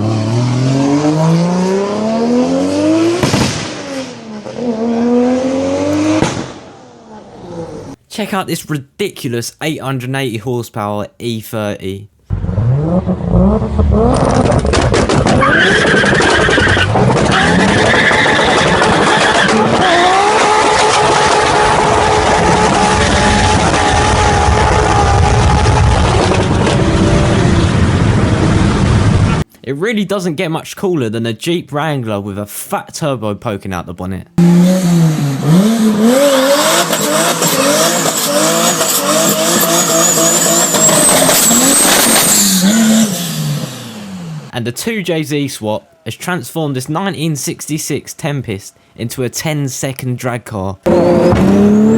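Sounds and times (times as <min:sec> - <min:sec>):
turbocharged car engine revving: 0:00.0 - 0:08.0, 0:12.3 - 0:29.4, 0:34.4 - 0:44.5, 0:50.8 - 0:51.9
tyres squealing: 0:15.3 - 0:21.0.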